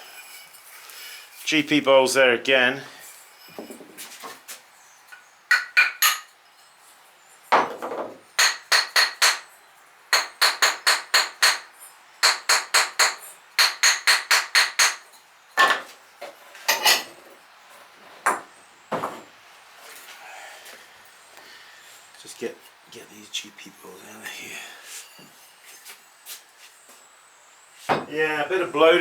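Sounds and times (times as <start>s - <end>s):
sharp ringing taps on hard object: 5.5s - 6.3s.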